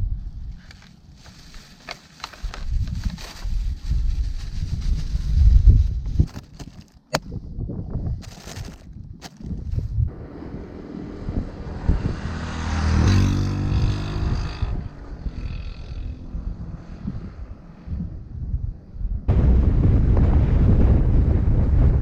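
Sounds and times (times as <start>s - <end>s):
engine passing by: 10.1s - 19.3s.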